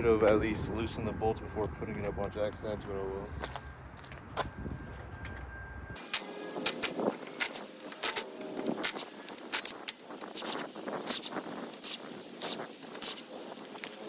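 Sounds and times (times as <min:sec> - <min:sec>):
hand tools clicking on wheel bolts: 0:06.0 - 0:14.0.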